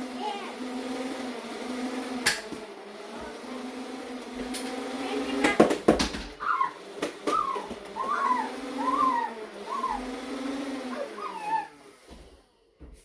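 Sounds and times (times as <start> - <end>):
toy blasters firing: 4.5 - 11.8
dog whimpering: 6.4 - 10.1, 10.8 - 11.8.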